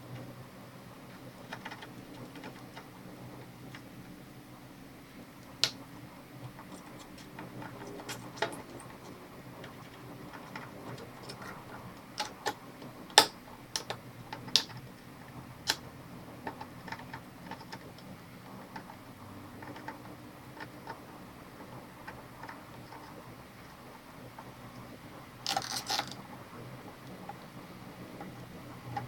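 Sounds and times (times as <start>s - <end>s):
small metallic clicks and taps: 6.5s - 14.9s, 16.4s - 19.0s.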